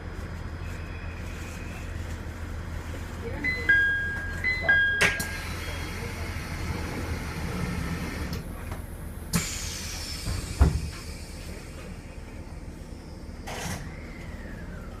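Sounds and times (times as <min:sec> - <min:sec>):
train low hum: 0:00.0 - 0:15.0.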